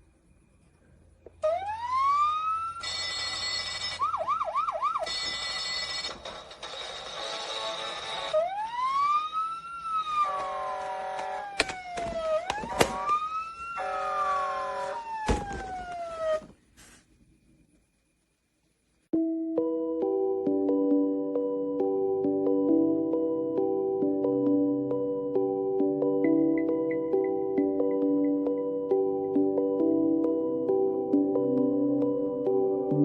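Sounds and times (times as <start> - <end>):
toy siren wails: 1.4 - 6.0, 8.3 - 16.5.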